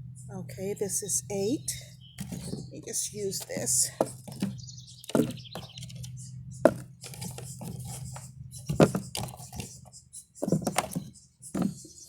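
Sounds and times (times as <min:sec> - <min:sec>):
scraping and rustling soil: 0:02.2 - 0:12.0
tool knocking: 0:03.3 - 0:06.0, 0:06.6 - 0:08.0, 0:08.7 - 0:09.7.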